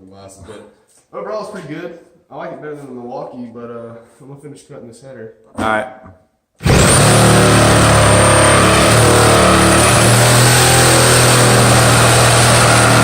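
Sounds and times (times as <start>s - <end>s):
reciprocating saw cutting: 6.6s - 13.0s.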